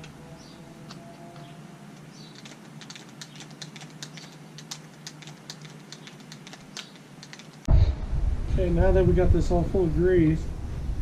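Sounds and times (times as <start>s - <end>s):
steady low hum: 0.0s - 11.0s
grease packing sticky clicks: 0.8s - 7.7s.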